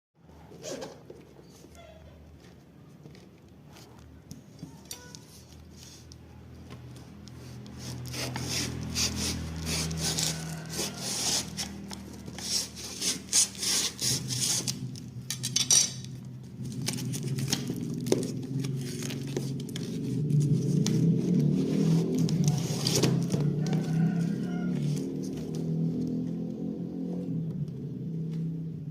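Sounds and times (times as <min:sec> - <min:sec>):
packaging scraping and rustling: 0:07.4 - 0:15.6, 0:16.5 - 0:25.8.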